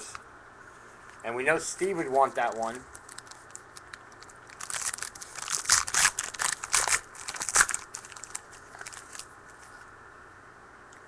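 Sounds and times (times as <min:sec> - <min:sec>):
foil wrapper crinkling and tearing: 0:01.9 - 0:09.3.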